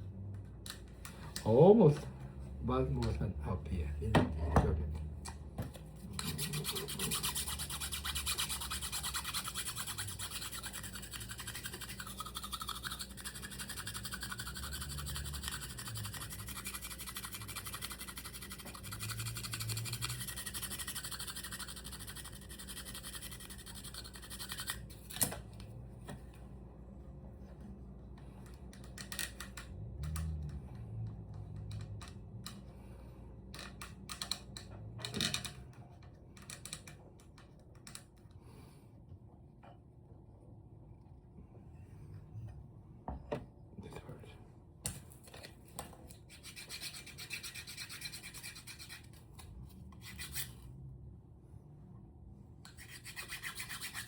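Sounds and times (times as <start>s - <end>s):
rubbing and scraping on wood: 6.0s - 24.8s
sparse scratches: 6.0s - 24.8s, 46.3s - 49.1s.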